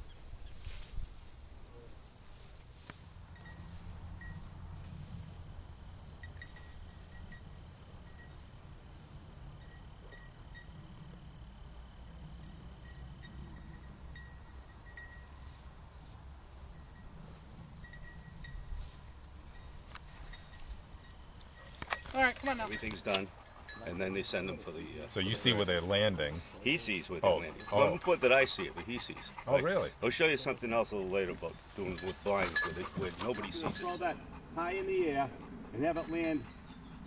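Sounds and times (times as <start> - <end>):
crickets chirring: 0.0 - 37.0
faint tinkles: 3.3 - 4.8, 6.1 - 8.6, 9.5 - 10.9, 12.4 - 15.6, 17.8 - 25.5, 27.0 - 28.1, 35.8 - 36.7.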